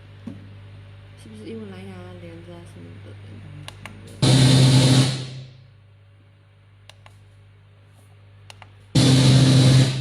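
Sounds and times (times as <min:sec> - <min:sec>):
loud burst from speaker: 0:04.2 - 0:05.5, 0:09.0 - 0:10.0.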